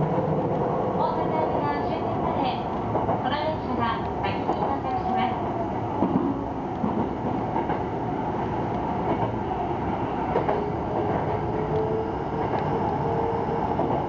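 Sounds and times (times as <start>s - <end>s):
electric train running: 8.4s - 14.0s.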